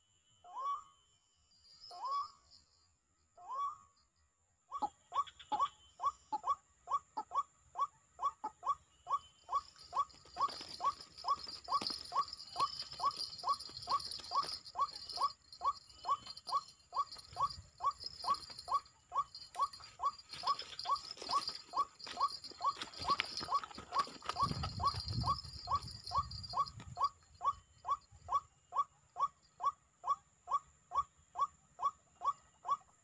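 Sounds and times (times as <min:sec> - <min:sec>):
waterhen calling: 0:04.8 - 0:28.5.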